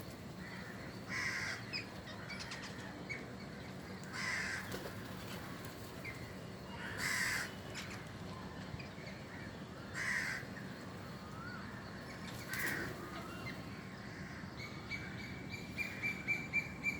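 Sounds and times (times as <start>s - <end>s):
bird harsh raspy calls: 0.4s - 5.2s, 6.7s - 8.1s, 9.3s - 10.7s, 11.3s - 16.9s.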